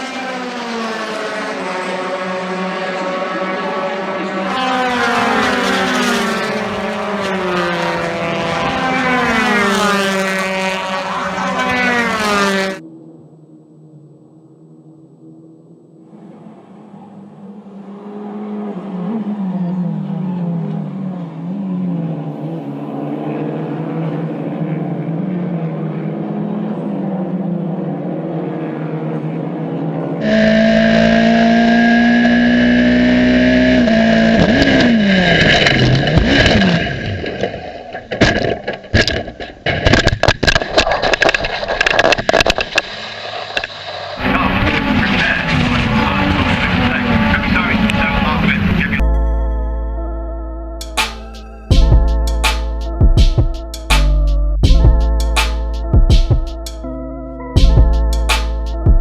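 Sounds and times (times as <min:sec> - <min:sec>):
race car engines revving: 0:00.0 - 0:40.6, 0:41.2 - 0:49.1
crash impacts and scraping: 0:34.7 - 0:44.2
car engine holding steady note: 0:44.2 - 0:59.0.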